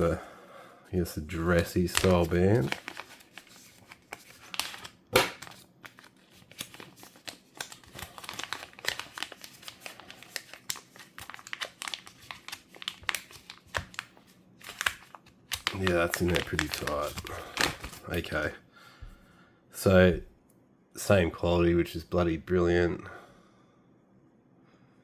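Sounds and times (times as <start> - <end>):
packaging crinkling: 1.3 - 18.5.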